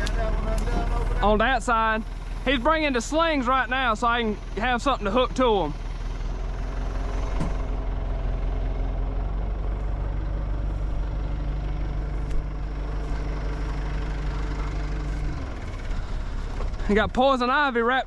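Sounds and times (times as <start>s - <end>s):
backhoe engine running: 0.0s - 18.0s.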